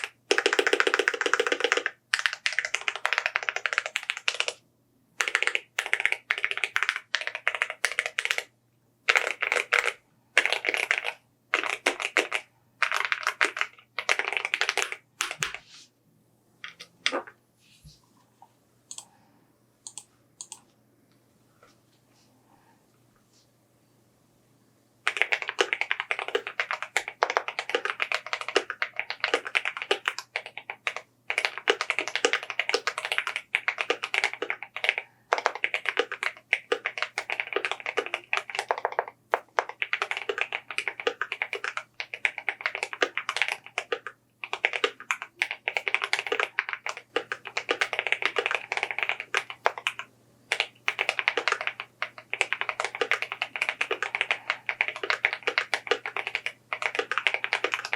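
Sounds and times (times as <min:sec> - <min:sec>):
typing on mechanical keyboard: 0:00.0 - 0:04.6, 0:05.2 - 0:15.6, 0:19.8 - 0:20.6, 0:25.0 - 0:57.9
faint low hum: 0:14.9 - 0:25.8.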